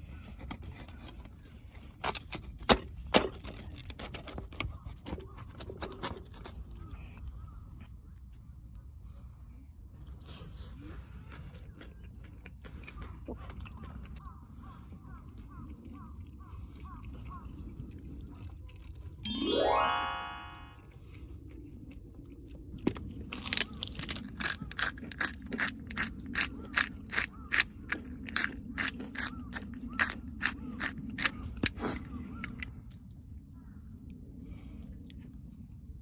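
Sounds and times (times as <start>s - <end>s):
crunchy food chewing: 10.5s - 14.3s, 21.6s - 32.6s.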